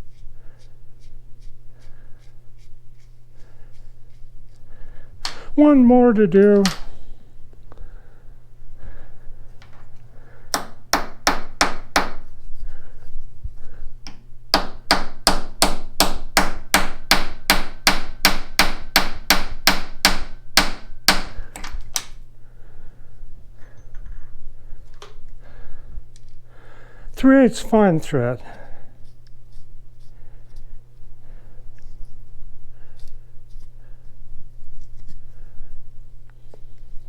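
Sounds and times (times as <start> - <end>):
low steady hum: 0.0 - 37.0
hammer striking metal: 10.5 - 12.2, 14.5 - 21.4.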